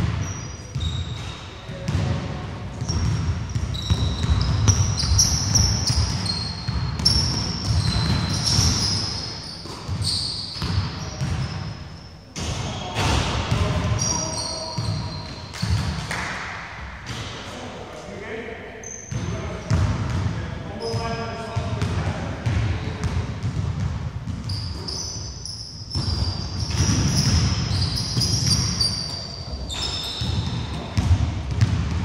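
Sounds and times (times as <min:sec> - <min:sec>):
sneakers squeaking on floor: 0:00.0 - 0:16.2, 0:18.8 - 0:20.2, 0:20.8 - 0:21.6, 0:23.1 - 0:32.0
basketball bouncing: 0:02.8 - 0:11.4, 0:25.9 - 0:28.8, 0:30.0 - 0:32.0.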